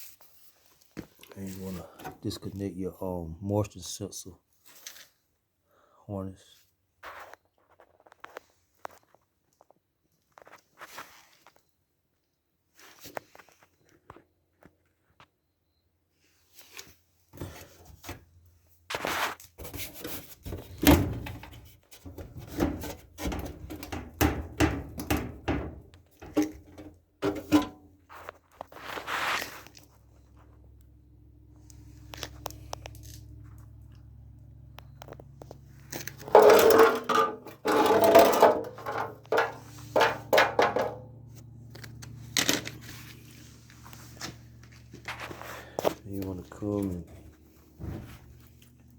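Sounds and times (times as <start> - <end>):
knocks clicks and scrapes: 18.9 - 29.8, 35.0 - 41.2
loud clattering: 36.2 - 41.1.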